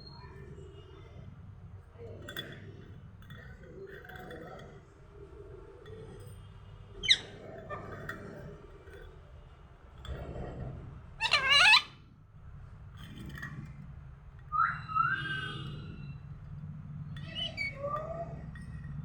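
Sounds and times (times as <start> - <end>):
parrot calling: 7.0 - 8.0, 11.2 - 12.0, 17.2 - 18.4.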